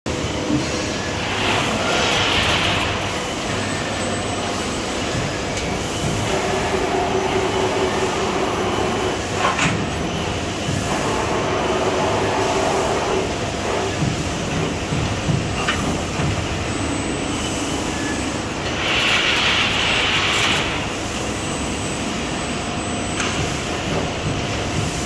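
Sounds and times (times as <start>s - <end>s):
folding machine running: 0.2s - 4.1s, 17.9s - 21.8s.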